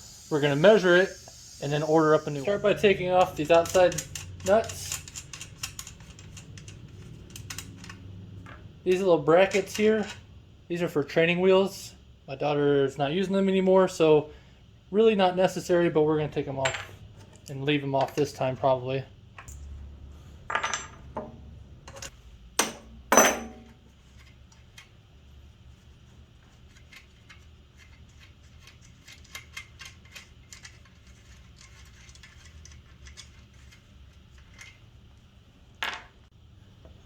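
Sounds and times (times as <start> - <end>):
metal hardware clinking: 21.9 - 23.8.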